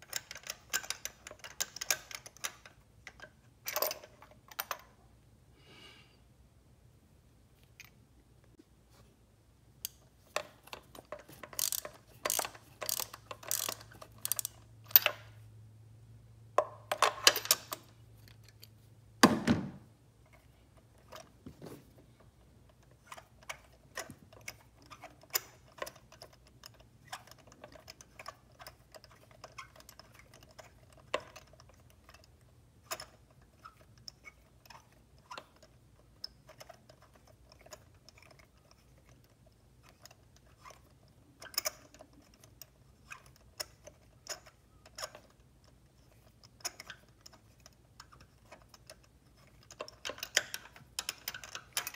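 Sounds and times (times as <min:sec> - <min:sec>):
hand tools clicking and scraping: 0:09.8 - 0:15.2, 0:20.3 - 0:51.9
heavy metal thunk: 0:19.2 - 0:19.9.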